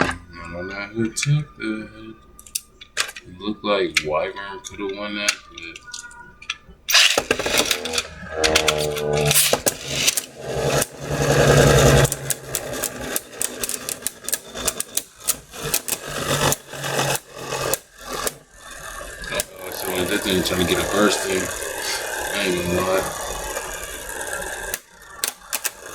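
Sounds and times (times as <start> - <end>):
spinning tops whirring: 2.4 - 25.9
tops clacking together: 4.8 - 25.9.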